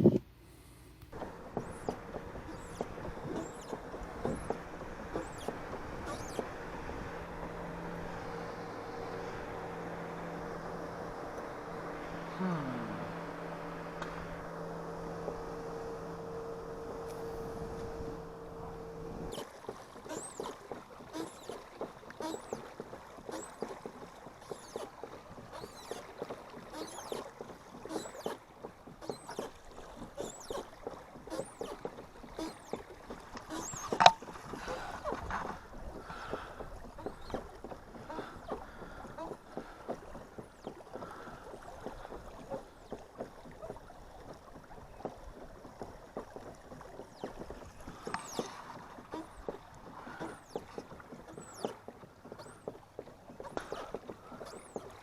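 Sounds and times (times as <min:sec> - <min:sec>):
small ticks and knocks: 0:01.0 - 0:06.5, 0:18.8 - 0:55.0
water splashing against a kayak: 0:01.1 - 0:55.0.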